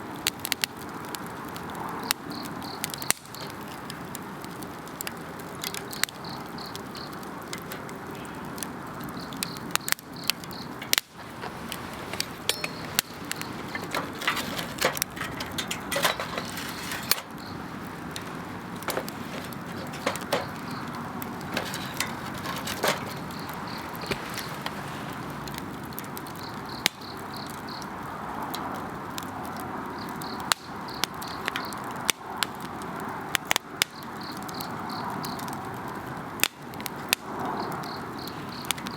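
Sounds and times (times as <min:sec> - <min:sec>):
campfire crackling and popping: 0:00.0 - 0:38.9
insects chirping: 0:02.3 - 0:03.6, 0:05.7 - 0:28.0, 0:37.5 - 0:38.8.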